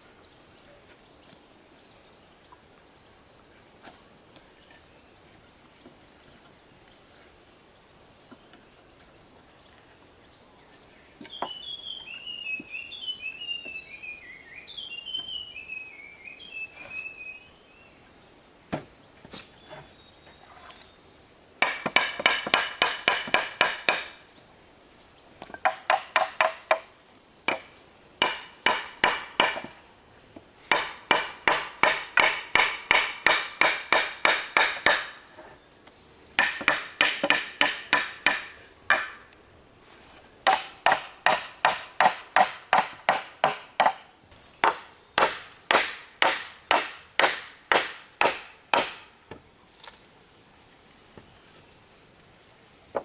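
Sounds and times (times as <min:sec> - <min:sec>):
insects droning: 0:00.0 - 0:53.0
bird chirping: 0:11.2 - 0:18.0
hammer driving nails into wood: 0:21.6 - 0:24.2, 0:27.5 - 0:29.8, 0:30.7 - 0:35.2, 0:36.4 - 0:39.2, 0:40.5 - 0:44.0, 0:44.6 - 0:49.0.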